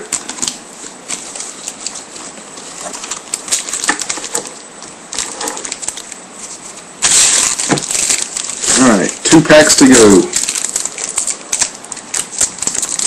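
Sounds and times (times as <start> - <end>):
pack wrapper crinkling: 0.0 - 13.0
trading cards clicking and rustling: 0.0 - 13.0.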